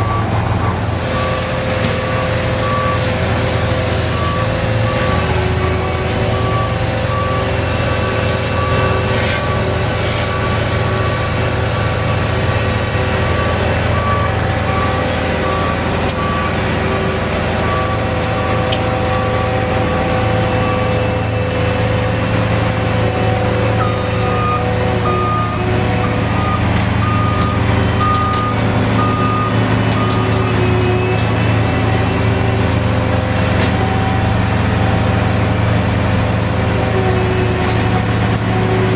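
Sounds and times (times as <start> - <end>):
heavy diesel engines running: 0.0 - 38.9
higher-pitched backup alarm: 4.1 - 21.0
backup alarm beeping: 23.8 - 30.6.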